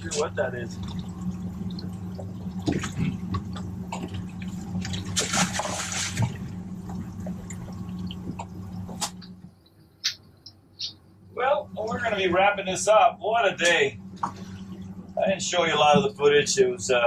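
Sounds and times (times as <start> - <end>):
water splashing and trickling: 0.0 - 9.5
low machinery hum: 0.0 - 17.0.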